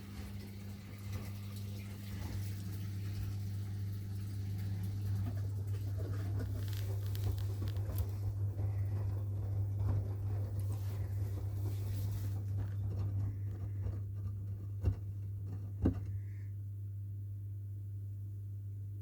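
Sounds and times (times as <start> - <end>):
laundry tumbling in drum: 0.0 - 16.2
washing machine hum: 0.0 - 19.0.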